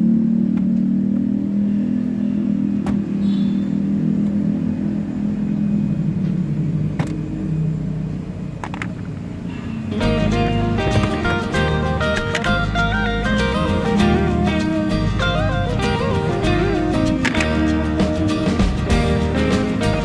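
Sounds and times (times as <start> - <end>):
van engine idling: 0.0 - 20.0
sharp clicks: 17.1 - 17.6.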